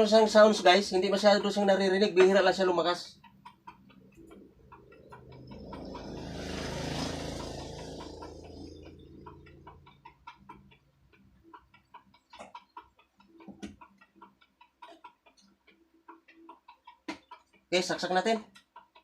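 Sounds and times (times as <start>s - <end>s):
vehicle passing: 3.9s - 10.5s.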